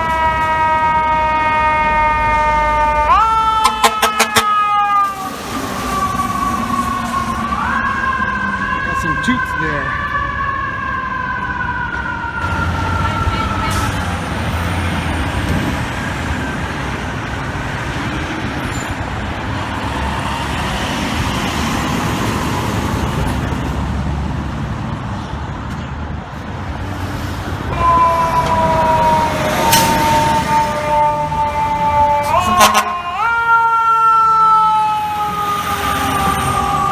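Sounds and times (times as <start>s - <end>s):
fire truck air horn: 0.0s - 5.9s, 13.1s - 14.1s, 27.7s - 33.8s
traffic: 0.0s - 36.9s
truck engine rumble: 0.0s - 36.9s.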